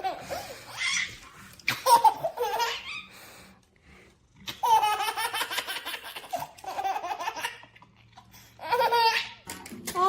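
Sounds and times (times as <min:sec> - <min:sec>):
baby laughing: 0:00.0 - 0:03.1, 0:04.4 - 0:07.8, 0:08.5 - 0:09.5.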